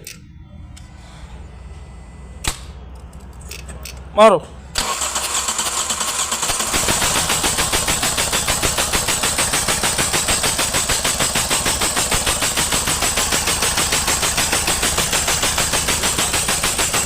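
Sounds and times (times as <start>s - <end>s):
starter motor cranking engine: 4.8s - 17.0s.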